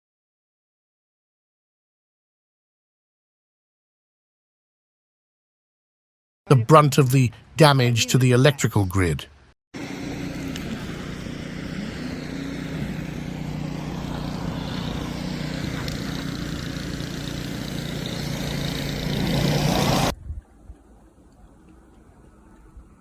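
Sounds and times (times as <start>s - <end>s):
road noise: 6.5s - 23.0s
vehicle engine hum: 6.6s - 23.0s.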